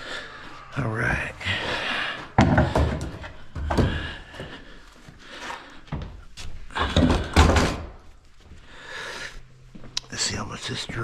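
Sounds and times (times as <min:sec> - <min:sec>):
heavy wooden knocks and thuds: 0:02.4 - 0:04.4, 0:06.8 - 0:08.0.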